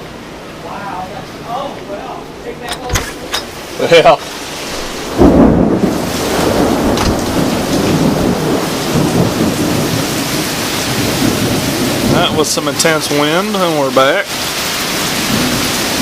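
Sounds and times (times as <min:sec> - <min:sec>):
heavy rain: 0:00.0 - 0:16.0
thunder cracking and rumbling: 0:03.2 - 0:13.0.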